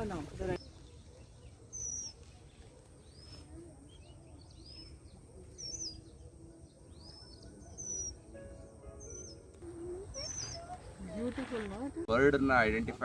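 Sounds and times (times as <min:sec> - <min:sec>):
birds whistling calls: 0:00.6 - 0:11.3
soft arching bird call: 0:09.0 - 0:11.1.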